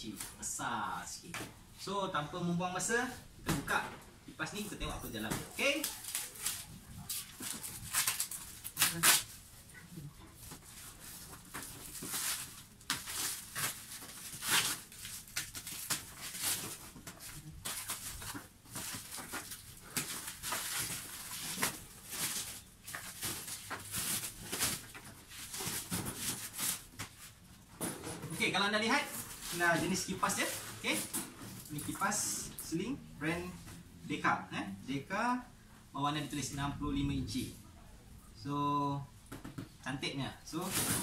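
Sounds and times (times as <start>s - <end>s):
cardboard rustling and ripping: 5.1s - 9.4s, 10.4s - 27.4s, 28.4s - 32.1s, 40.6s - 41.0s.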